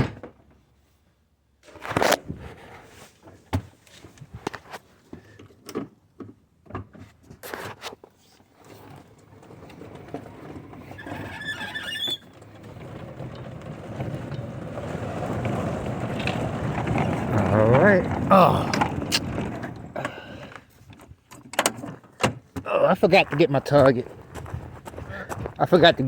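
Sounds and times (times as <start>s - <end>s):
golf cart driving: 8.7s - 21.1s, 22.7s - 26.0s.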